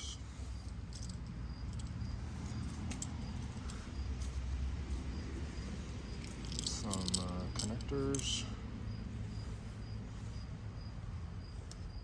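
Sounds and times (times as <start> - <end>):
pocket items clicking and rattling: 0.0 - 5.0, 5.6 - 8.4.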